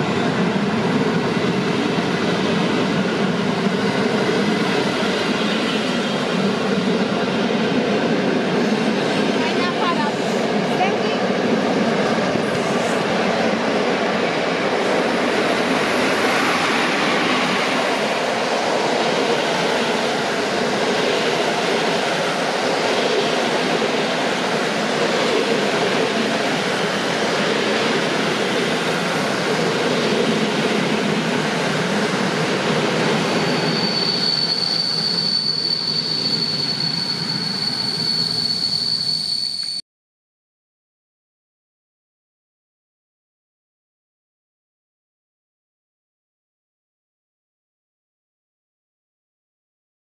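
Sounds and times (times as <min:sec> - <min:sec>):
train rolling on rails: 0:00.0 - 0:39.8
high-pitched squeal: 0:33.2 - 0:39.8.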